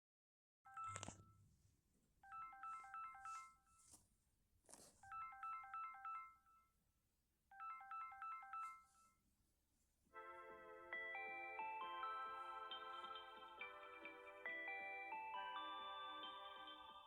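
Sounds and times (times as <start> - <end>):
chiming alarm melody: 10.2 - 17.0.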